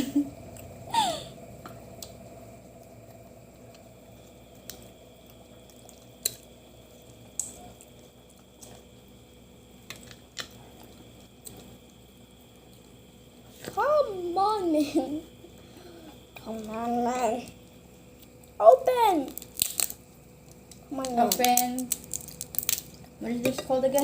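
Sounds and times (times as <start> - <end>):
crab shell cracking: 7.3 - 7.6, 19.3 - 23.1
wet squishing: 19.3 - 23.1.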